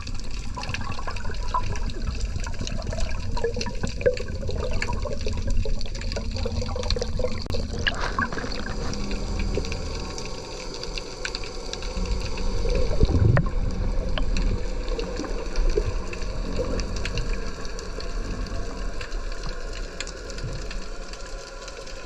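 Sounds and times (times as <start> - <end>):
steady low rumble: 0.0 - 21.8
water sloshing and gurgling: 0.0 - 22.0.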